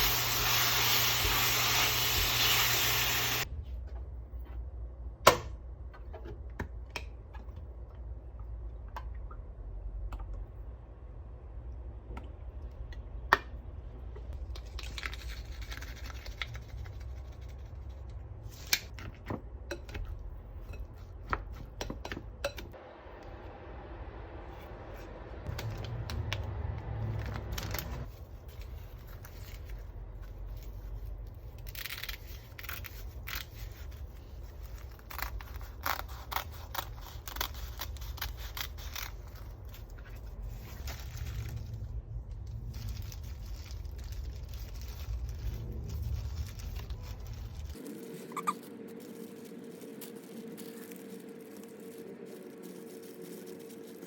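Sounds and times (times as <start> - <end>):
low hum: 22.7 - 29.0, 39.1 - 54.0.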